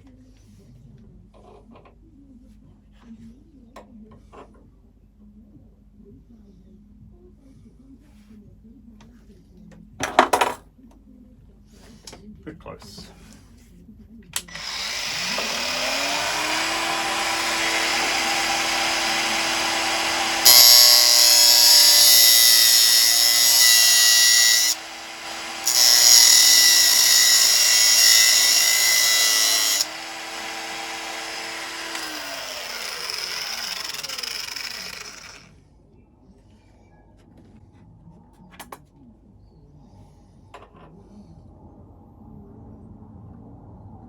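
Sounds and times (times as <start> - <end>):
angle grinder cutting steel: 14.5 - 35.5.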